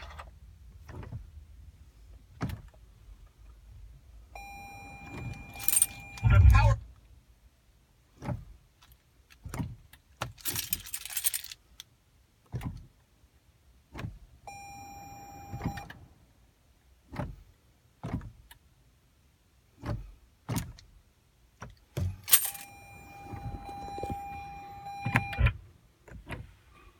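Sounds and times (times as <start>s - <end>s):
electronic car chime: 4.4s - 6.8s, 14.5s - 15.9s, 22.3s - 25.5s
keys jangling: 5.2s - 6.5s, 10.4s - 11.6s, 22.2s - 24.5s.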